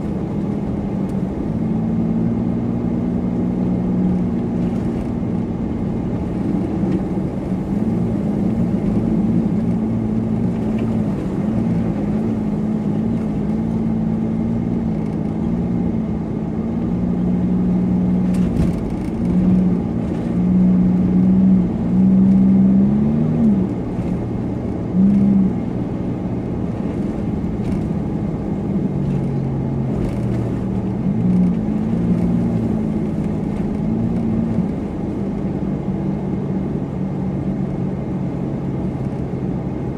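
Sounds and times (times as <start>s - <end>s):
car engine running: 0.0s - 39.9s
road noise: 0.0s - 39.9s.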